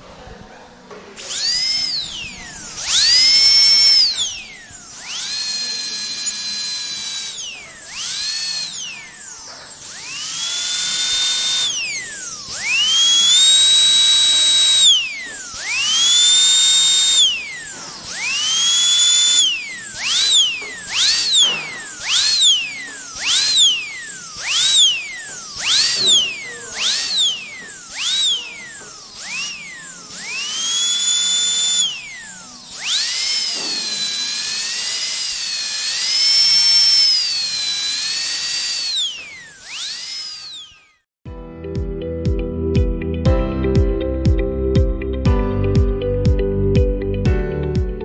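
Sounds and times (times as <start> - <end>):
dentist's drill whining: 1.2 - 41.1.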